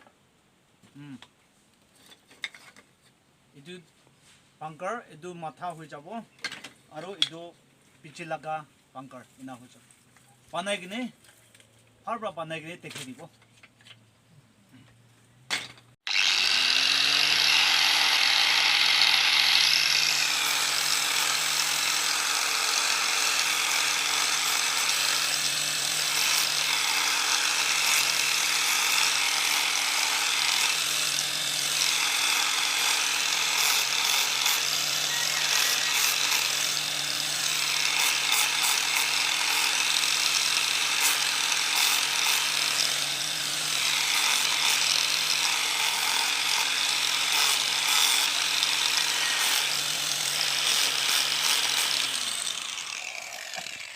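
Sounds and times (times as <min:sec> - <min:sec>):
power tool cutting bamboo: 0:16.0 - 0:53.9.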